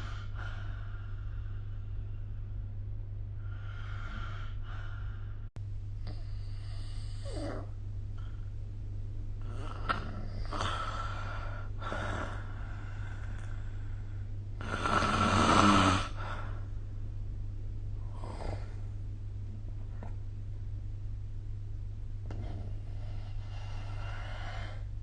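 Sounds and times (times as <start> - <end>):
steady low hum: 0.0 - 25.0
person snoring: 14.6 - 16.6.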